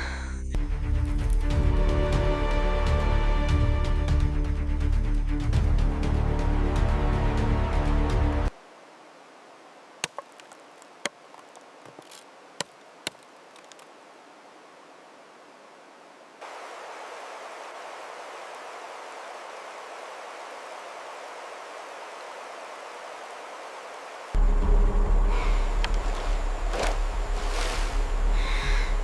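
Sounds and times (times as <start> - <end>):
outdoor ambience hiss: 6.0 - 29.0.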